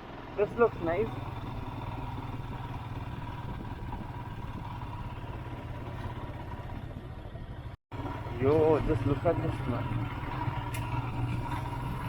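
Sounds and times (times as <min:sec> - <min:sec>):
motorcycle engine running: 0:00.0 - 0:12.0
wind noise on microphone: 0:03.1 - 0:04.8.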